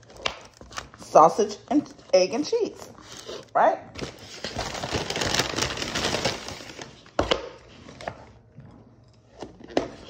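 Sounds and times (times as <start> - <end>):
paper wrapper crinkling: 2.0 - 7.2.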